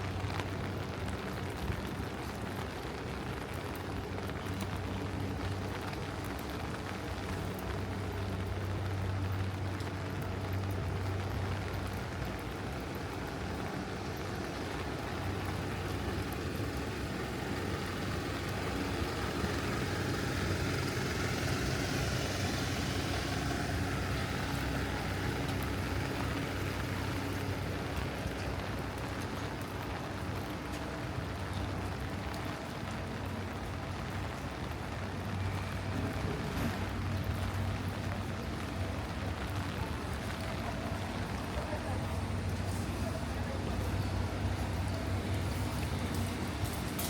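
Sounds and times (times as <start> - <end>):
traffic engine hum: 0.0 - 47.0
tyres hissing on wet pavement: 0.1 - 47.0.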